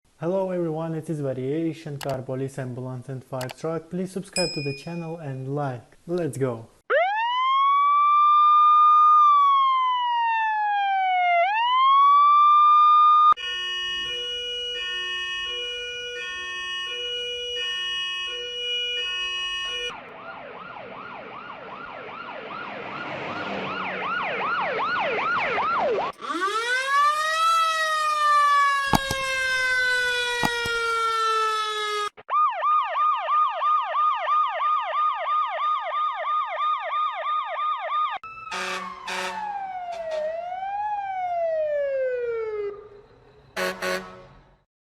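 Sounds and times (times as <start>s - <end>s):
clicks: 2.0s - 2.2s, 28.9s - 30.9s
electronic emergency vehicle sirens: 6.9s - 44.5s.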